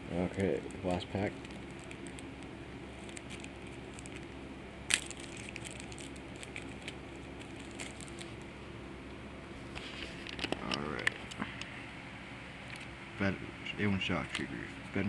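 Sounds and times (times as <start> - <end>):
foil pack crinkling: 0.1 - 8.5.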